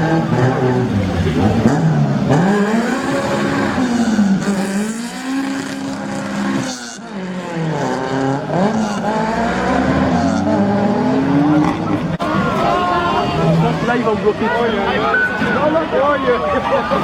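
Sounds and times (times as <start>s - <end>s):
car engine revving: 0.0s - 14.4s.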